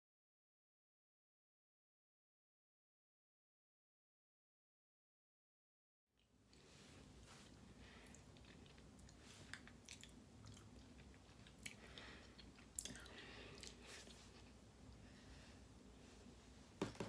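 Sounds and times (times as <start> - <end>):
chewing crunchy cereal: 7.4 - 14.2.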